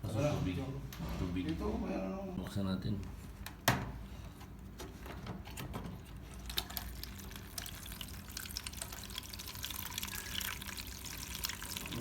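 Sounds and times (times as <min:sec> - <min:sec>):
water trickling and splashing: 0:06.3 - 0:12.0.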